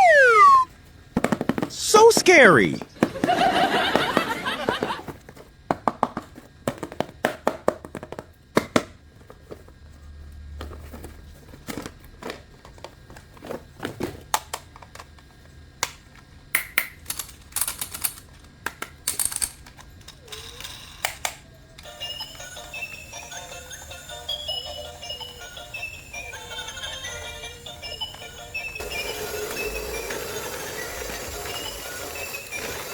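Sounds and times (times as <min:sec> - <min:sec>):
plastic toys clicking and tapping: 0:14.2 - 0:21.9.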